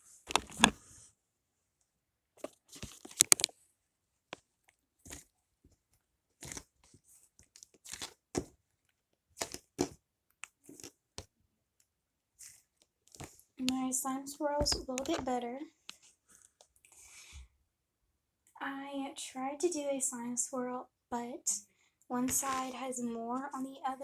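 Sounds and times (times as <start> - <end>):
sticky slime crackles: 2.7 - 3.5, 7.5 - 8.5.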